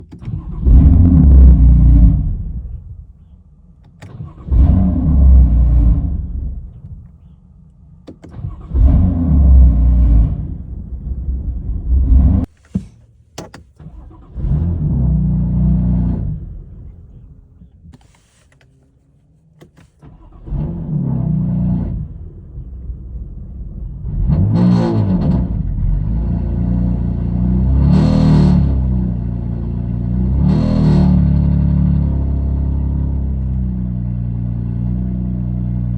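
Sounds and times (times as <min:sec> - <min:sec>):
car engine running unevenly: 0:21.9 - 0:24.6.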